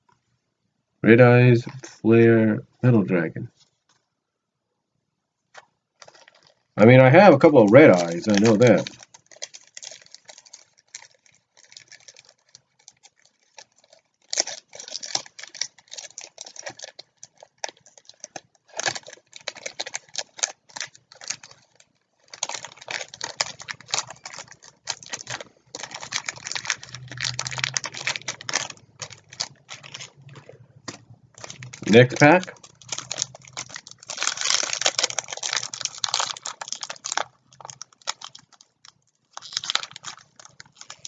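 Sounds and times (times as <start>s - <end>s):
packaging crinkling: 5.5s - 41.0s
trading cards shuffling: 7.5s - 21.8s, 22.4s - 37.3s.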